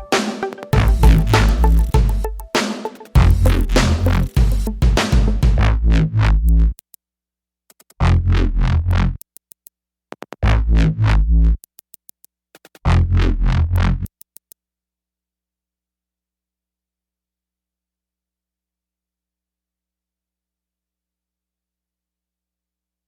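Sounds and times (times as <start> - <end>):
stuttering electronic music: 0.0 - 5.8.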